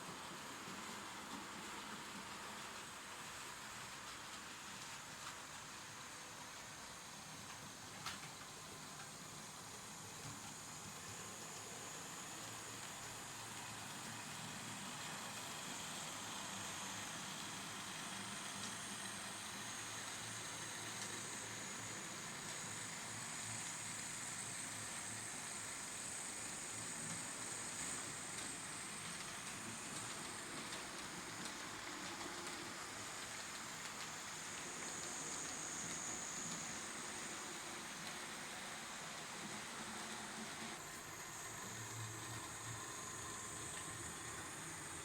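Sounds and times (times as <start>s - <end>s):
rolling hiss of wheels: 0.0s - 45.0s
model train motor whine: 6.6s - 45.0s.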